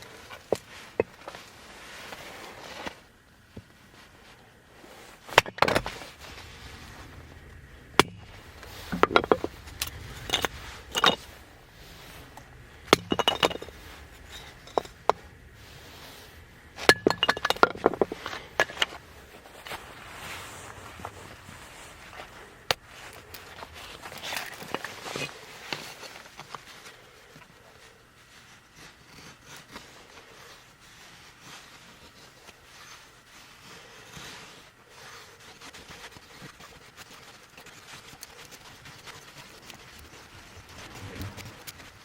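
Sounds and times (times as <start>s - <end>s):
hard objects clinking together: 8.0s - 9.6s, 10.2s - 11.4s, 12.9s - 15.2s, 16.8s - 19.0s.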